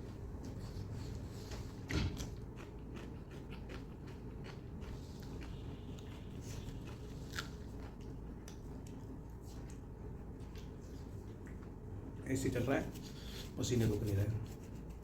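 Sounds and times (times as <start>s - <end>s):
steady low hum: 0.0s - 15.0s
wet chewing mouth clicks: 1.9s - 9.0s.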